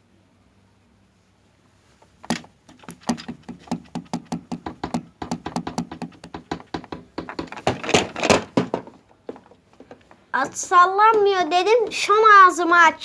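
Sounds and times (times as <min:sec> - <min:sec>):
washing machine knocking: 0:02.3 - 0:10.6.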